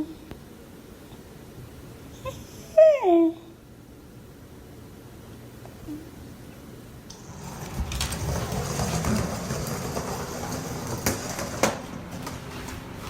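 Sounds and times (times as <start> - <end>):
rumbling rattling mechanical noise: 7.1 - 13.0.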